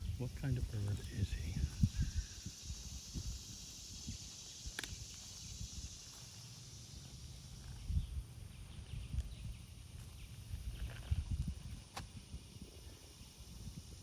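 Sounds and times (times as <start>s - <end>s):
steady high hiss: 0.0s - 10.7s, 11.6s - 14.0s
faint high ticks: 4.6s - 5.2s.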